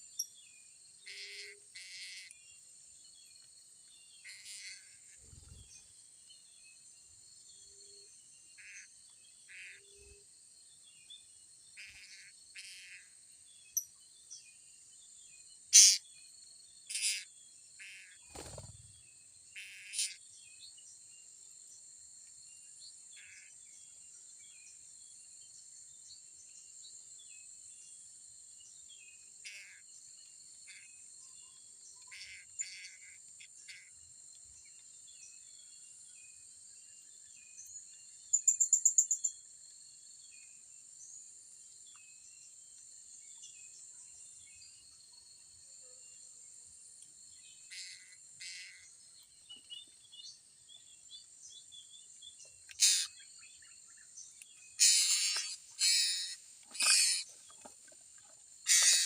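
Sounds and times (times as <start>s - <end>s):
shrill parrot calls: 52.8s - 53.1s, 54.8s - 57.2s, 58.7s - 59.0s
high-pitched insect drone: 54.8s - 57.3s, 58.7s - 59.0s.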